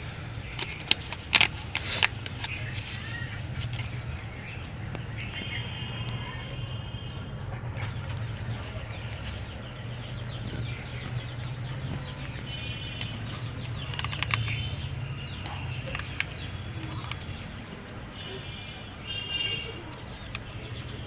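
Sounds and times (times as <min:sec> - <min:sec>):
birds chirping: 0:00.0 - 0:21.0
sharp clicks: 0:10.3 - 0:17.4.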